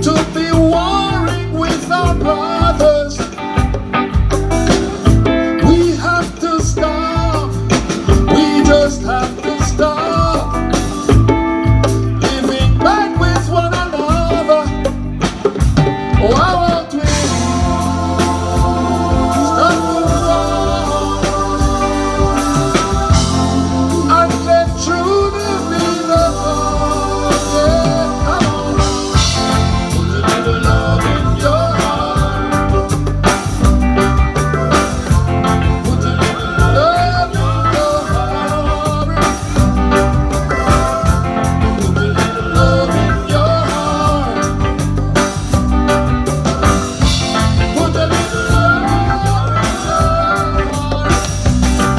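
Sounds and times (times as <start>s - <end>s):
reggae music with singing: 0.0s - 51.9s
strong bass line: 15.0s - 51.9s.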